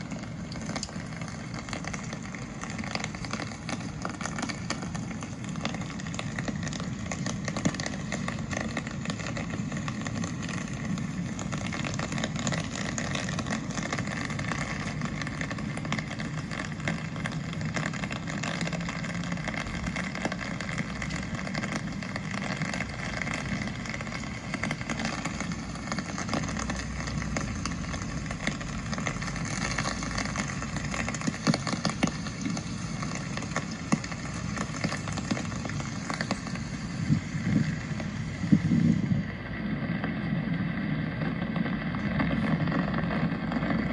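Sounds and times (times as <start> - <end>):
low rumble of street traffic: 0.0 - 43.9
steady rain falling: 0.0 - 43.9.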